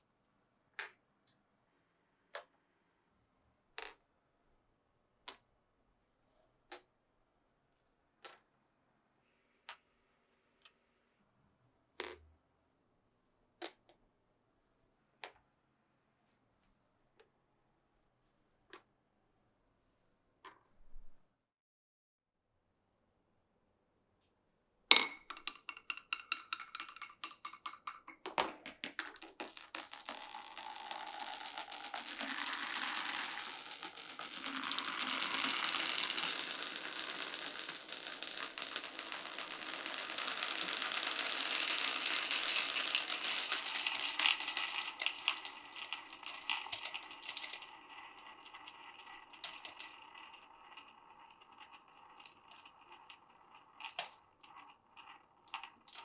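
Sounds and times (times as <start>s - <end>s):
marbles rolling down wooden track: 25.2s - 56.0s.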